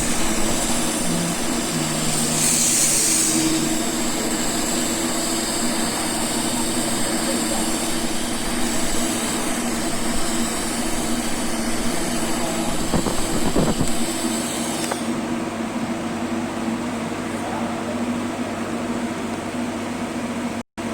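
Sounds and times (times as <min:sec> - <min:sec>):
welding arc hissing and buzzing: 0:00.0 - 0:15.2
welding machine hum: 0:00.0 - 0:15.3.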